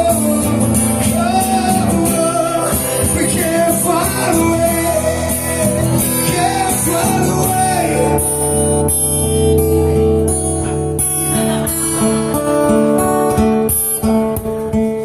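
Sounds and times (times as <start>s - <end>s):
acoustic guitar strumming: 0.0s - 15.0s.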